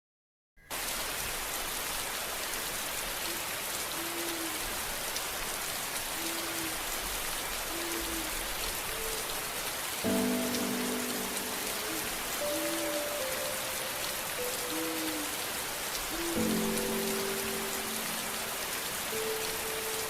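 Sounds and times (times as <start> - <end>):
steady rain hiss: 0.7 - 20.0
soft sustained music chords: 10.0 - 20.0.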